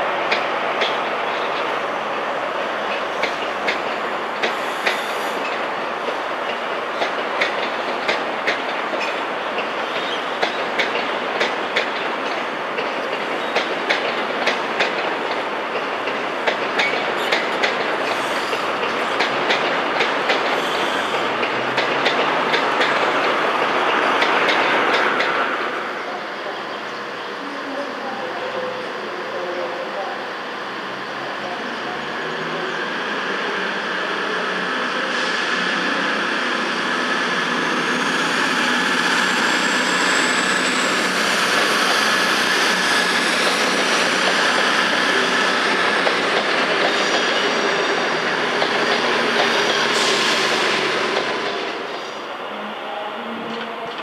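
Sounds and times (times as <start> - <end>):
train wheels rumbling: 0.0 - 52.3.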